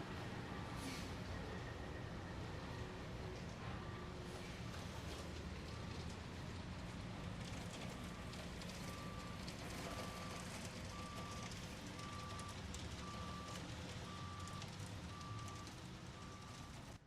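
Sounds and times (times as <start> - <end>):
traffic rumble: 0.0 - 17.0
reversing alarm beeping: 8.9 - 16.8.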